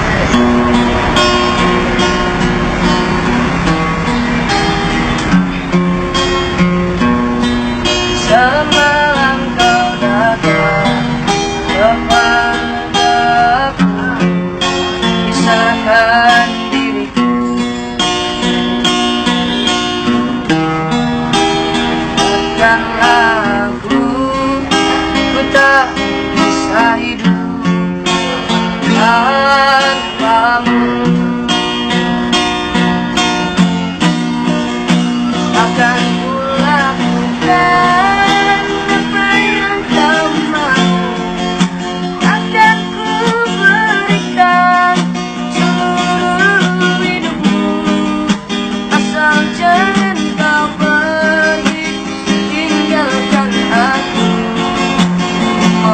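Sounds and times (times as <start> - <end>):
strummed acoustic guitar: 0.0 - 55.9
person singing: 7.9 - 17.9, 22.1 - 31.7, 35.2 - 55.9.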